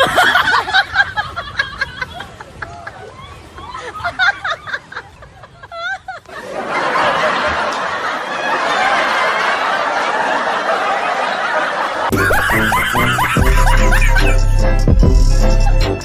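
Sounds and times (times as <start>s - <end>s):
group of people laughing: 0.0s - 14.5s
music with heavy bass beat: 12.1s - 16.0s.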